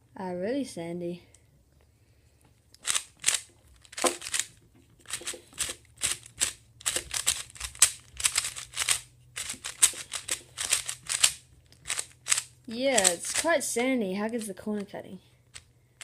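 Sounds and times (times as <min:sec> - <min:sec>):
plastic puzzle cube clicking: 0:02.8 - 0:13.5.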